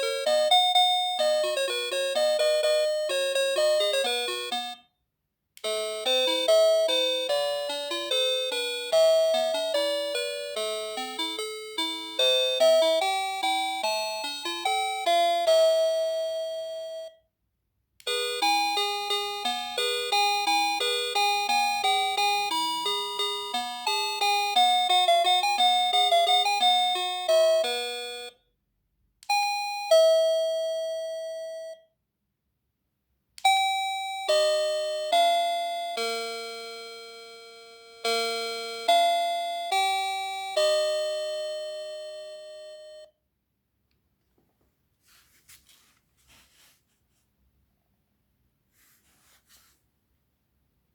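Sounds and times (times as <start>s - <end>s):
doorbell electronic chime tunes: 0.0s - 4.9s, 5.6s - 17.3s, 18.1s - 28.4s, 29.3s - 32.0s, 33.4s - 43.2s.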